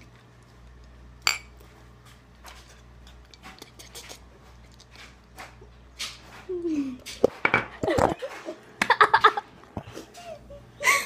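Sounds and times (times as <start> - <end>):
glassware clinking: 1.2 - 1.6.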